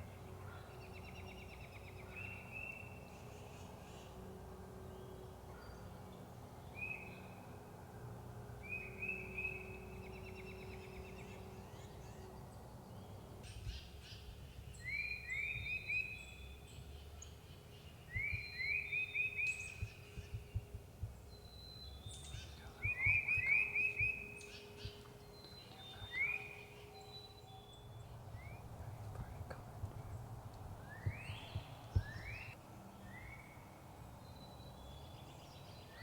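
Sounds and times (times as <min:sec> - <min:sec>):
bird singing trilled phrase: 0:21.8 - 0:28.7
low thumps: 0:29.0 - 0:32.3.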